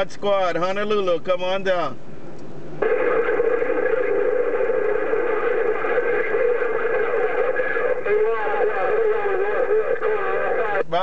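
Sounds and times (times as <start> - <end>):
radio static: 2.8 - 11.0
steady droning radio tone: 2.8 - 11.0.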